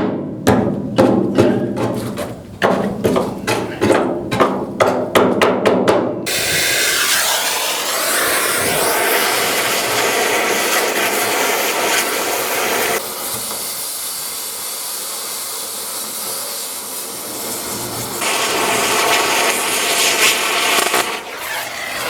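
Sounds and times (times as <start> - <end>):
cutting torch hissing: 6.3 - 22.0.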